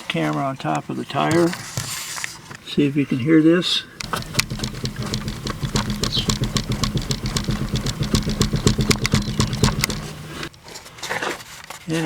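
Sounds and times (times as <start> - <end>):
steady low hum: 4.0 - 10.5
wheel hub clunking and clicking: 4.0 - 10.5.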